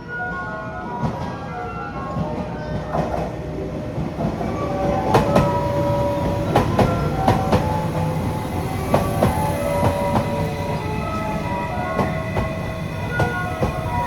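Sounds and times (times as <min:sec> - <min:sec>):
train rumble: 0:00.0 - 0:14.0
train wheels clacking: 0:02.1 - 0:14.0.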